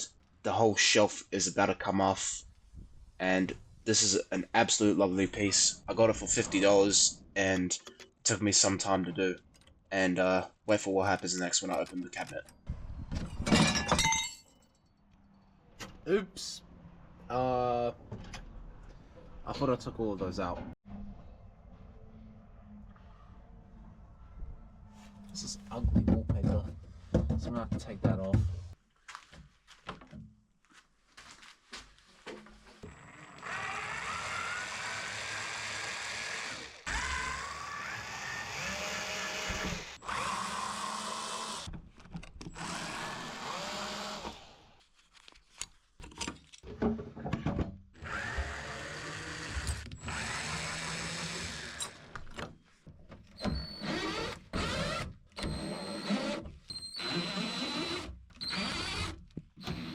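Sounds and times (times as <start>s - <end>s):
power drill motor whine: 32.8s - 41.7s, 42.5s - 44.6s, 48.0s - 52.1s, 53.4s - 59.9s.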